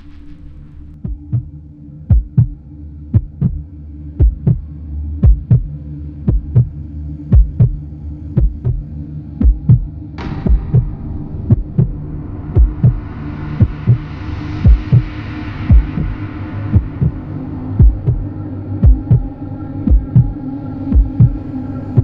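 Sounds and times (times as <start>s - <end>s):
steady low drone: 0.0s - 22.0s
heartbeat thumps: 1.0s - 3.6s, 4.2s - 4.6s, 5.2s - 5.7s, 6.3s - 6.7s, 7.3s - 7.8s, 8.4s - 8.8s, 9.4s - 10.9s, 12.6s - 13.0s, 13.6s - 14.0s, 14.6s - 15.1s, 15.7s - 16.2s, 16.8s - 17.2s, 17.8s - 18.2s, 18.8s - 19.3s, 19.9s - 20.3s, 20.9s - 21.4s.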